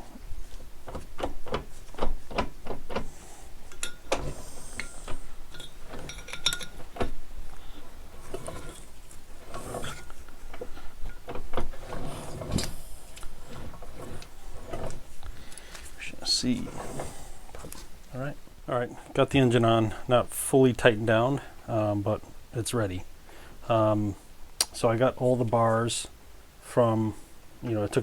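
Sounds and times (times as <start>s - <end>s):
hand tools and metal parts clanking: 0.4s - 17.9s.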